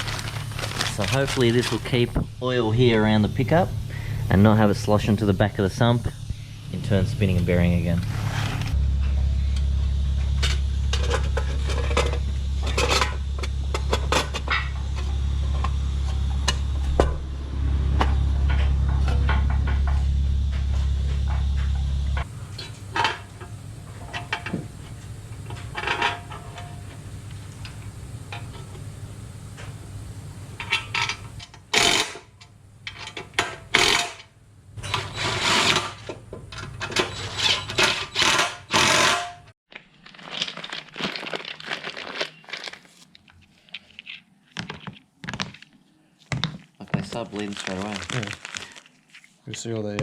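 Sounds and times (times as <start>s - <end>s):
low steady hum: 0.0s - 39.4s
metal tools clinking: 9.0s - 17.0s, 21.3s - 28.7s.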